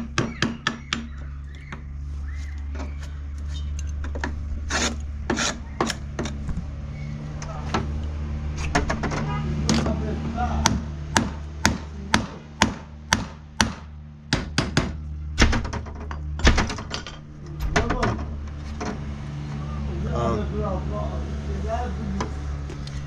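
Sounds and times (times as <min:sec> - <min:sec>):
low hum: 0:00.0 - 0:23.0
hammer strikes: 0:10.6 - 0:18.2.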